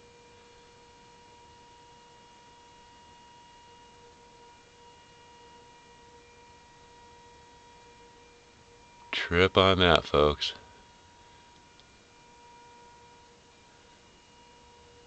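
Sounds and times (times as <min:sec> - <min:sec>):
faint droning hum: 0:03.8 - 0:15.0.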